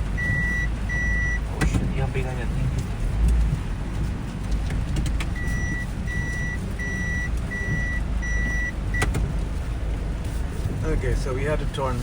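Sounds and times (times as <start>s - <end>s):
low engine rumble: 0.0s - 12.0s
reversing alarm beeping: 0.2s - 1.4s, 5.4s - 8.7s.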